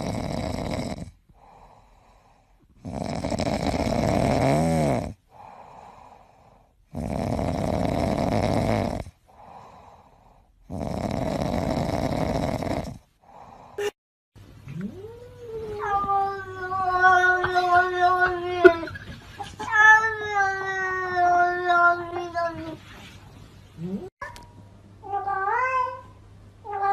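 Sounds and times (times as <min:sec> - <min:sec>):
cat snoring: 0:00.0 - 0:02.2, 0:02.8 - 0:09.9, 0:10.6 - 0:13.5
soft breaths: 0:01.2 - 0:02.8, 0:05.2 - 0:06.9, 0:09.1 - 0:10.7.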